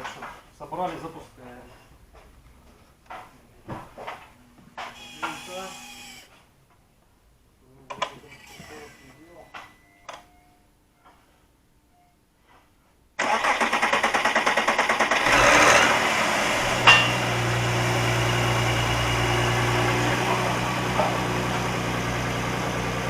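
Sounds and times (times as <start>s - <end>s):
starter motor cranking: 13.2s - 20.3s
car engine starting and idling: 13.2s - 23.0s.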